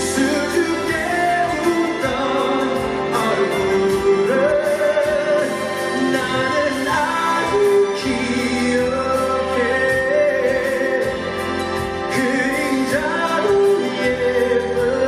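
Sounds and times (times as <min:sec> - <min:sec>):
band accompaniment: 0:00.0 - 0:15.0
person singing a ballad: 0:00.0 - 0:15.0.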